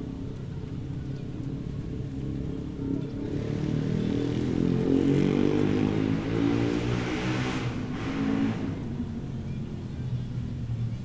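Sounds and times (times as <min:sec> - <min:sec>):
vehicle engines running: 0:01.6 - 0:09.2
vehicle passing close by: 0:03.4 - 0:08.9.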